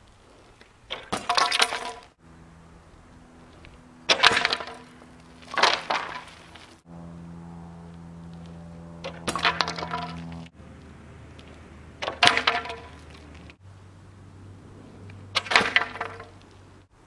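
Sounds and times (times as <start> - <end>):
steady low hum: 0.0 - 17.0
bike clattering on hard ground: 0.3 - 2.2, 3.4 - 6.8, 9.0 - 10.6, 11.3 - 13.6, 15.3 - 16.6
bike landing crashes: 0.9 - 2.2, 4.0 - 6.8, 9.0 - 10.5, 12.0 - 13.5, 15.3 - 16.3.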